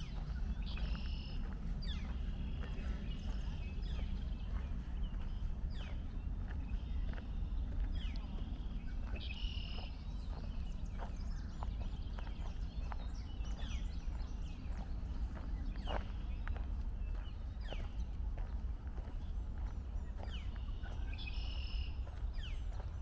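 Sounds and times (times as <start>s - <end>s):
birds calling and singing: 0.0s - 23.0s
footsteps on dirt trail: 0.0s - 23.0s
steady low rumble: 0.0s - 23.0s.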